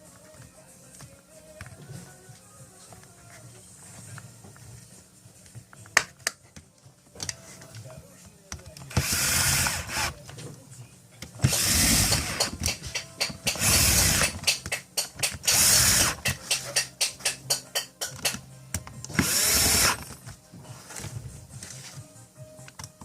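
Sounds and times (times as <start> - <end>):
cordless drill motor bursts: 8.9 - 10.1, 11.4 - 12.5, 13.5 - 14.4, 15.4 - 16.2, 19.1 - 20.0.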